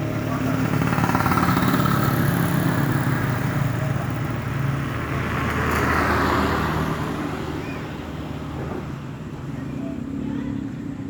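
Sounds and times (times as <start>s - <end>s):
vehicle engine humming: 0.0s - 5.1s
road noise: 0.0s - 11.0s.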